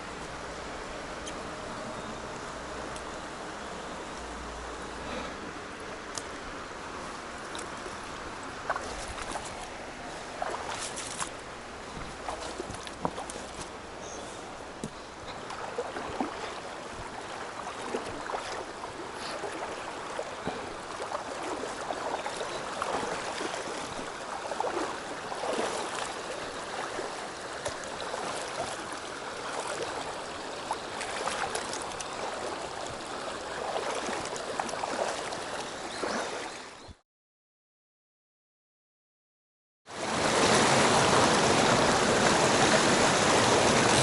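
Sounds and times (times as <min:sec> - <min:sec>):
river water over rocks: 0:00.0 - 0:36.9, 0:39.9 - 0:44.0.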